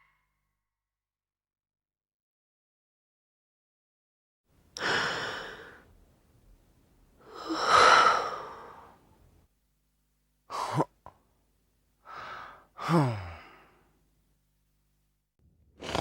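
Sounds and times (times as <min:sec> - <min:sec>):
person sighing: 0:04.8 - 0:05.8, 0:07.2 - 0:09.0, 0:12.0 - 0:13.9.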